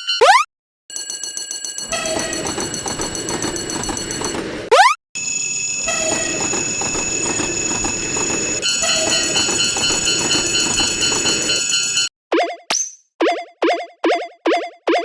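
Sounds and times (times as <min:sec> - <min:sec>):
high ringing tones: 0:00.2 - 0:04.6, 0:05.2 - 0:12.1.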